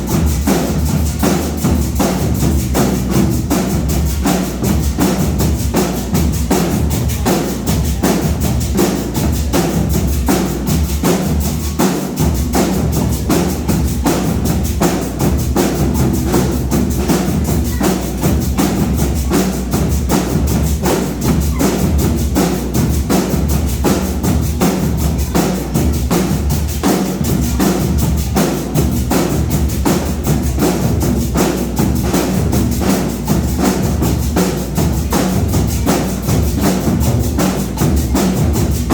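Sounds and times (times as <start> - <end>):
drums in fast rhythm: 0.0 - 38.9
marching band playing: 0.0 - 38.9.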